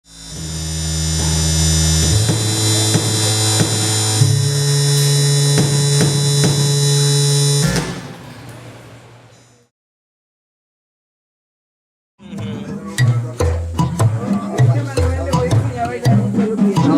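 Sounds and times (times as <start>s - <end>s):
synthesizer music with beat: 0.3s - 8.1s.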